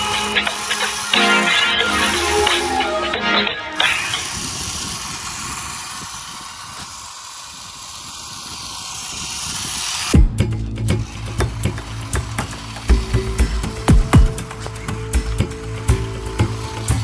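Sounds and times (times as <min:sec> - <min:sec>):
background music: 0:00.0 - 0:04.2, 0:10.2 - 0:17.0
toy car motor buzzing: 0:00.0 - 0:17.0.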